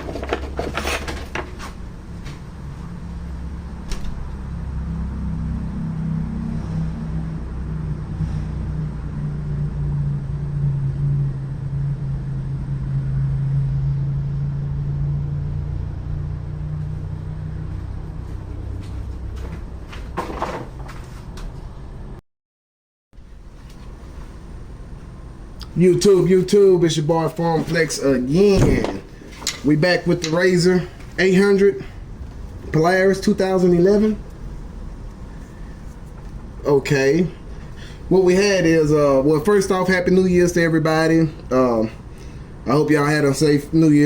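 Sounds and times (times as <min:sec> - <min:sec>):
knocks and clatters: 0:00.0 - 0:01.7
low motor hum: 0:00.0 - 0:20.2, 0:23.2 - 0:39.2.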